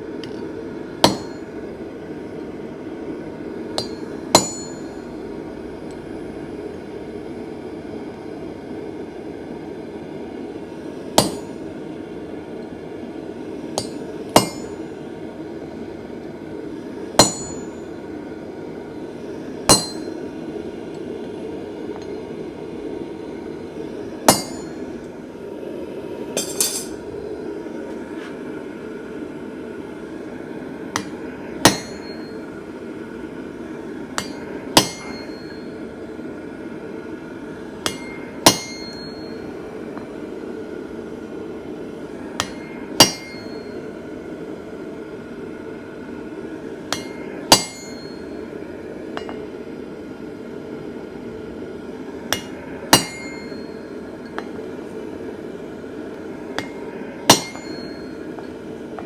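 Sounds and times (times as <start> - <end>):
hammer blows on anvil: 1.0 - 1.6, 3.8 - 5.1, 11.2 - 11.6, 13.8 - 14.9, 17.2 - 18.0, 19.7 - 20.3, 24.3 - 25.0, 26.4 - 27.0, 31.0 - 32.5, 34.2 - 35.8, 37.8 - 40.2, 42.4 - 44.0, 46.9 - 48.5, 52.3 - 54.7, 56.5 - 58.6.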